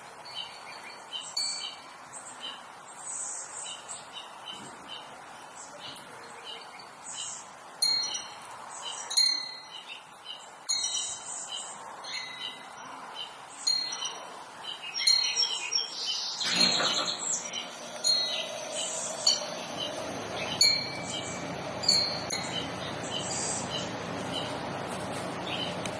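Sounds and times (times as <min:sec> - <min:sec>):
small birds chirping: 0:00.2 - 0:25.9
steady rushing noise: 0:16.4 - 0:25.9.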